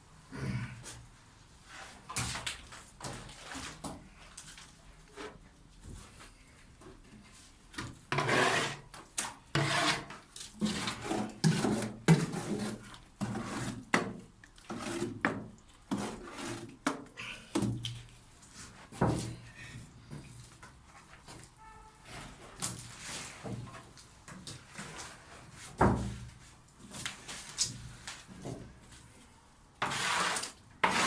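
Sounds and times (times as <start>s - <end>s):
hand tool scraping plaster: 8.1s - 8.9s, 9.5s - 17.7s, 29.8s - 31.0s.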